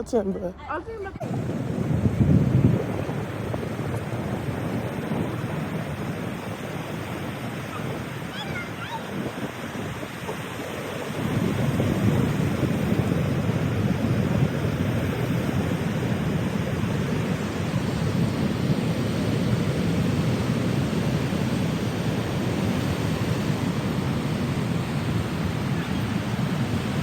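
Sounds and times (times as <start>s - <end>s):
wind rumbling on microphone: 0.8s - 27.0s
ocean surf roaring: 0.9s - 27.0s.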